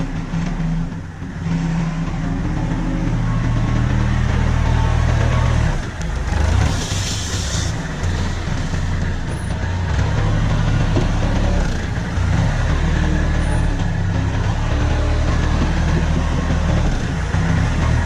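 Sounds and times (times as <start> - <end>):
heavy machine engine droning: 0.0 - 18.0
short hiss: 6.7 - 7.8.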